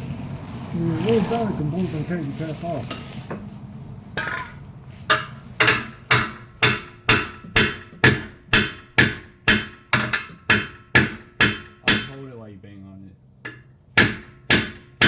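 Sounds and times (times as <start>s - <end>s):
hammer striking metal: 5.1s - 12.3s, 13.5s - 15.0s.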